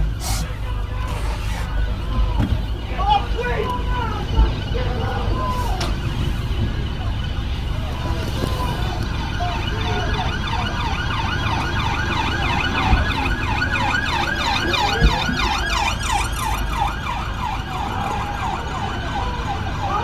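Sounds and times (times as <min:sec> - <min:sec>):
police siren yelping: 0:07.0 - 0:20.0.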